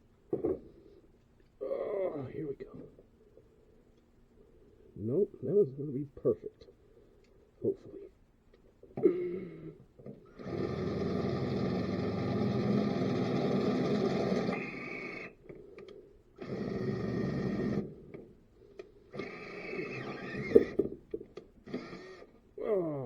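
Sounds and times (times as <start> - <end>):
electric drill boring a hole: 10.4 - 15.3, 16.4 - 17.9, 19.2 - 20.8, 21.7 - 22.3.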